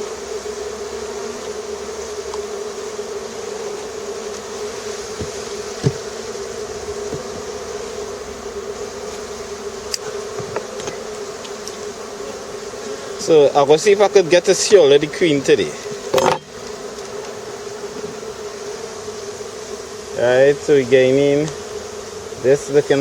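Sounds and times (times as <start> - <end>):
honeybees buzzing: 0.0 - 23.0.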